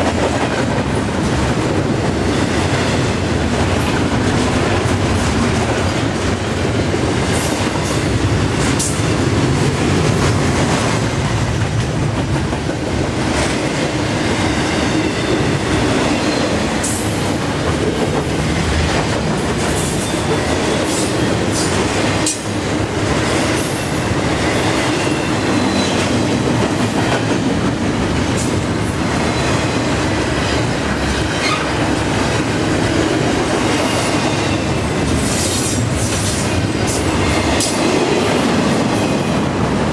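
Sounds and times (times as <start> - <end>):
steel wheels rumbling on rail: 0.0 - 39.9
faint wheel squeal: 31.3 - 31.8.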